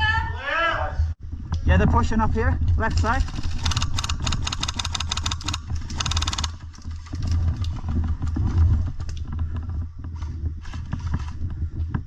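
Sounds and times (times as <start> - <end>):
airsoft rifle full-auto bursts: 3.3 - 6.6.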